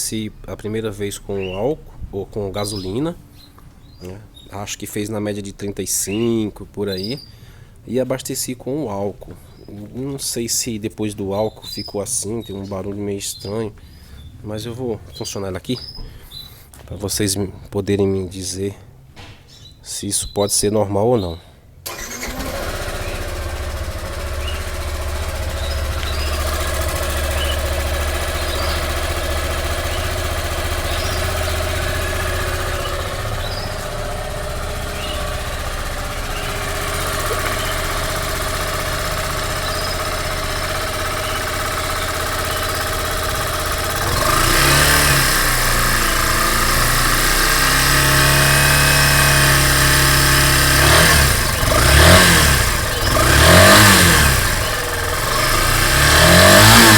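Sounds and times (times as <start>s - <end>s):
motorcycle engine idling and revving: 21.9s - 56.9s.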